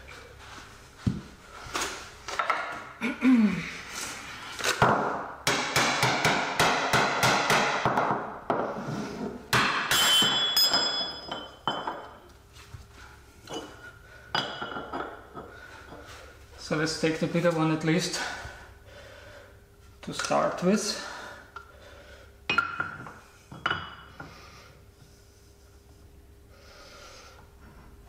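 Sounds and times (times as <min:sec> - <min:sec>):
steel ringing: 0:09.9 - 0:11.7
metal tools knocking and clinking: 0:09.9 - 0:12.2.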